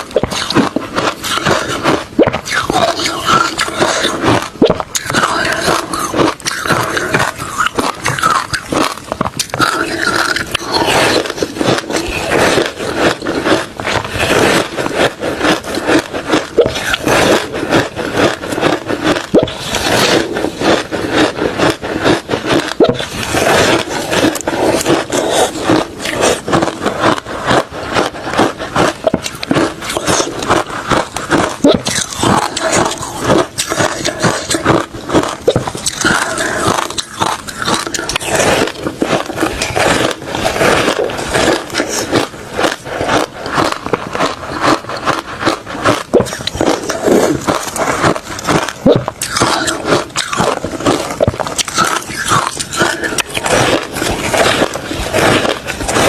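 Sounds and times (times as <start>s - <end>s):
ice being chewed: 0.0s - 56.0s.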